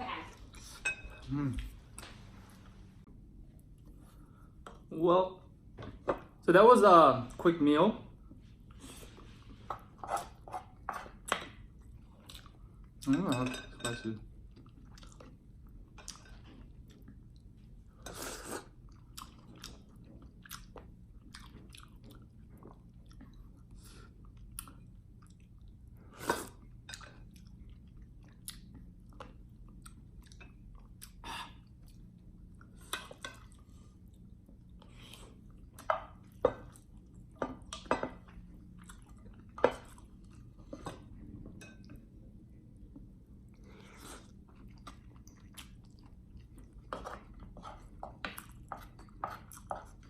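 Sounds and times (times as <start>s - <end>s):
person chewing food: 8.7s - 13.1s, 14.4s - 42.0s, 42.8s - 50.0s.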